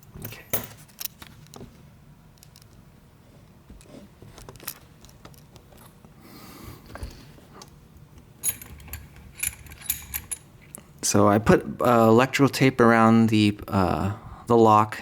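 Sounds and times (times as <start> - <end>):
metal lock parts clicking: 8.4 - 10.5.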